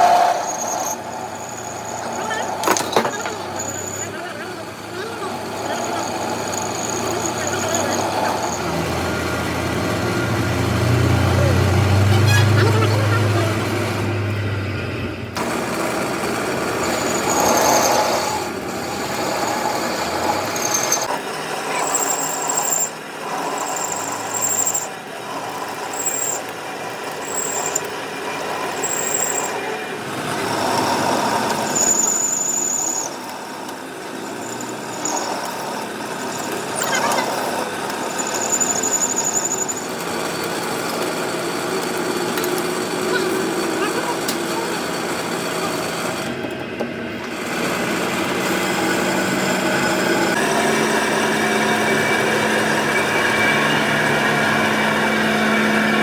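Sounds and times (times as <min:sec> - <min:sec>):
tool scraping steel: 0:00.0 - 0:09.5, 0:16.2 - 0:46.5
high squeals: 0:00.0 - 0:14.0, 0:16.6 - 0:46.3, 0:47.3 - 0:56.0.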